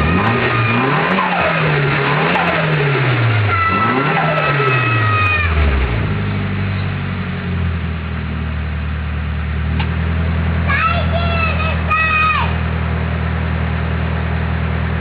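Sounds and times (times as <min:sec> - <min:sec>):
high turbo whine: 0:00.0 - 0:10.8.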